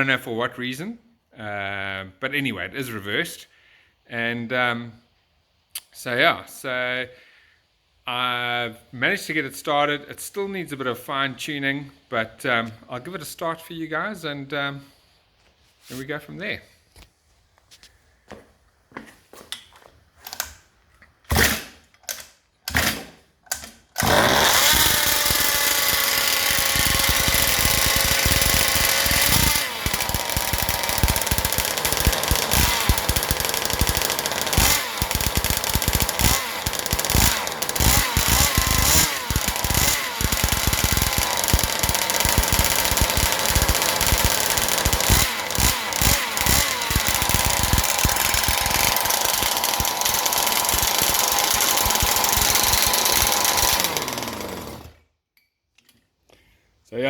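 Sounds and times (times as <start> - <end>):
pull starter cord: 21.3 - 55.0
small engine revving: 24.0 - 55.0.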